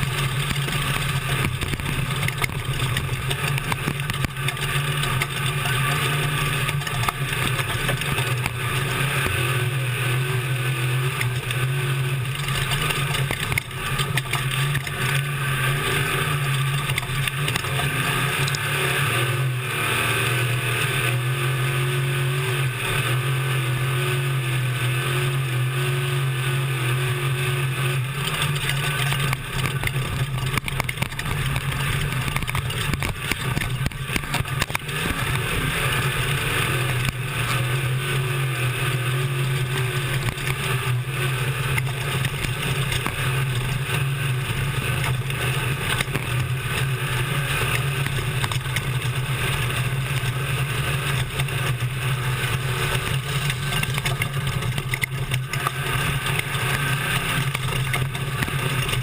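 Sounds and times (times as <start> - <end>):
knocks and rattles: 0.0 - 9.4, 12.2 - 15.3, 28.2 - 37.6, 52.4 - 59.0
road and wind noise: 0.0 - 59.0
truck engine running hard: 0.0 - 59.0.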